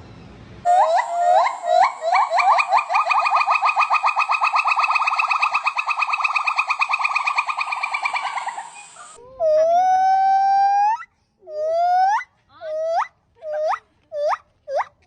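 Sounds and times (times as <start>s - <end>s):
monkey long whistled call: 0.7s - 12.2s
monkey trilling: 0.7s - 14.9s.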